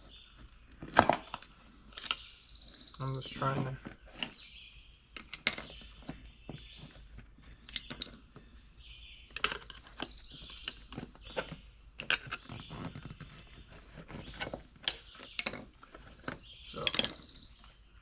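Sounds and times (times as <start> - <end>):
metal scraping against rubber: 9.4 - 17.3.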